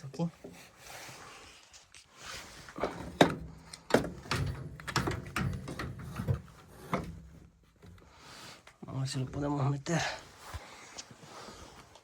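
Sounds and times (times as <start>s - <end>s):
metal parts knocking and clunking: 2.8s - 7.3s.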